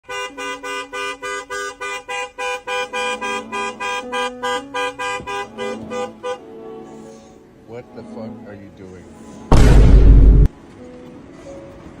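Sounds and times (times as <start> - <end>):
honking horn-like music notes: 0.0 - 9.4.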